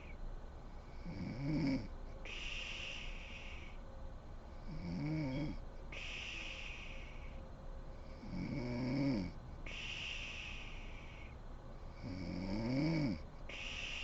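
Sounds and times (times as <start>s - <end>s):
woman snoring: 1.0s - 1.9s, 4.7s - 5.6s, 8.2s - 9.3s, 12.0s - 14.0s.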